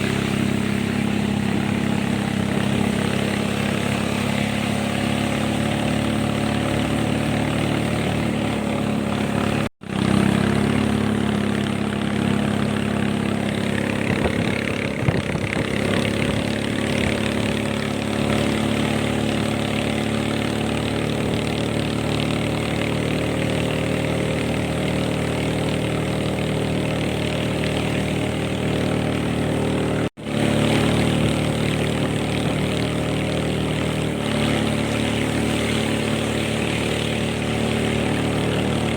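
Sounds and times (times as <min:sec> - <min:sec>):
rushing wind and water: 0:00.0 - 0:22.2
boat engine running: 0:00.0 - 0:38.9.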